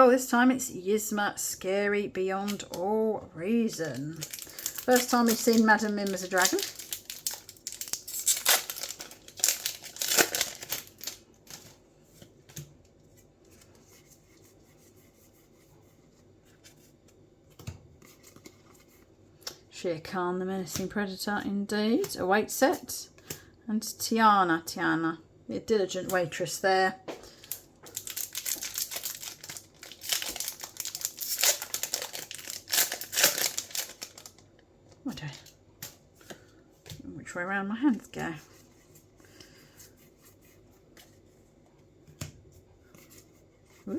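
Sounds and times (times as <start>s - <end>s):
trading cards rustling: 3.5s - 11.8s, 27.4s - 34.4s
plastic wrapper crinkling: 3.6s - 11.8s, 27.4s - 34.6s.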